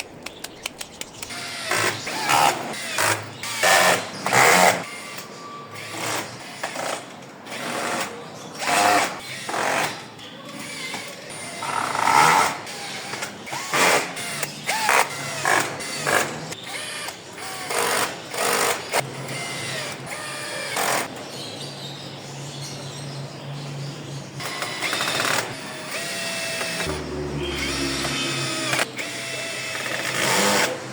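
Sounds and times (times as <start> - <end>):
power tool bursts: 24.4 - 30.9.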